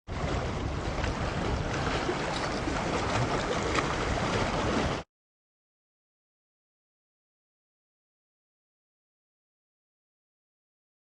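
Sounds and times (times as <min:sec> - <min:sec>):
wind buffeting microphone: 0:00.1 - 0:05.0.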